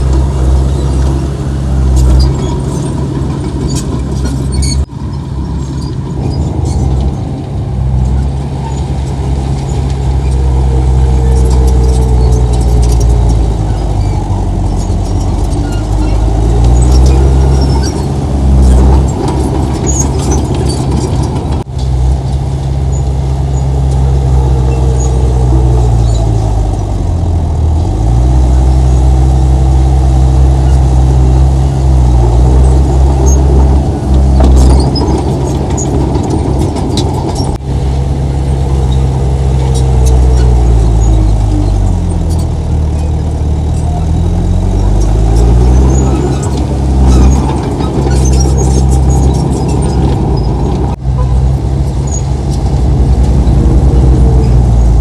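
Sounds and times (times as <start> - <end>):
heavy diesel engine under load: 0.0 - 55.0.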